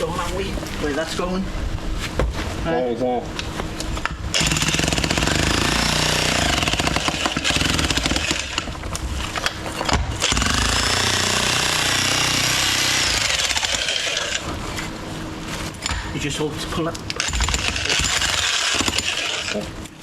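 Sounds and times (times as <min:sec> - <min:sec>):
jackhammer hammering concrete: 0:04.3 - 0:08.8, 0:09.9 - 0:14.4, 0:17.2 - 0:19.6.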